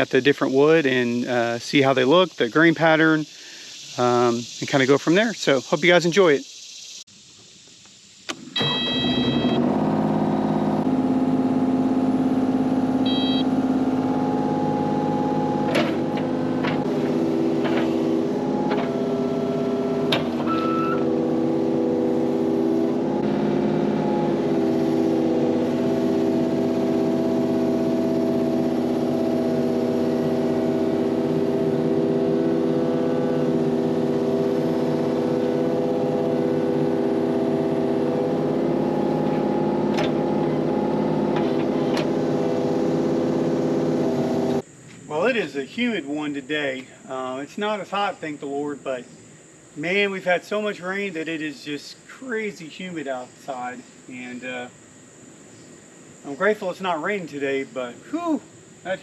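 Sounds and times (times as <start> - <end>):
small engine running: 8.3 - 44.6.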